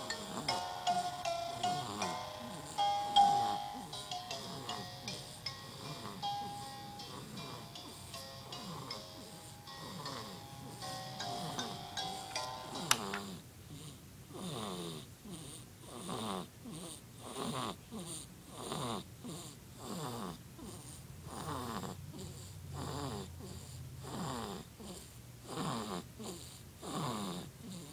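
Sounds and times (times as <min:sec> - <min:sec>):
person snoring: 0:00.0 - 0:15.0.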